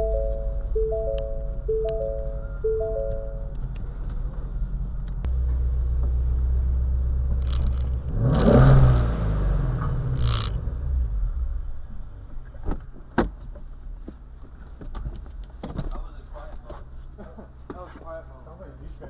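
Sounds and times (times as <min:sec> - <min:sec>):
car engine revving: 0:05.3 - 0:12.2.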